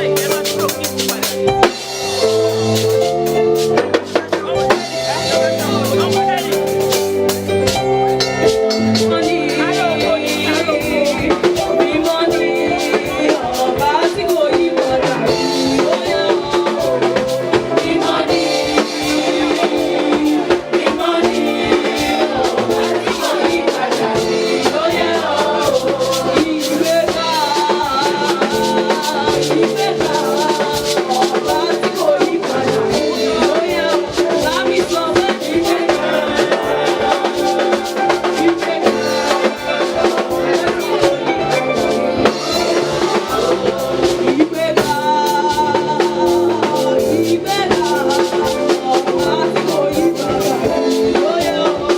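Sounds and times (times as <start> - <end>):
drums and shakers: 0.0 - 51.9
choir singing: 9.0 - 47.2.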